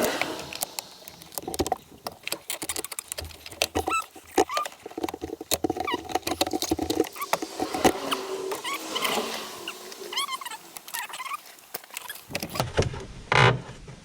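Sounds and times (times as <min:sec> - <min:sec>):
hand tools clicking on metal: 0:00.0 - 0:08.0
rubber hose squeaking: 0:00.0 - 0:12.6.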